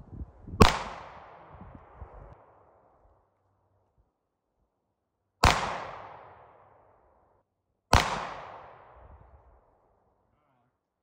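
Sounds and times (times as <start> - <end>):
pistol shots: 0.6 - 1.4, 5.4 - 6.5, 7.9 - 9.0.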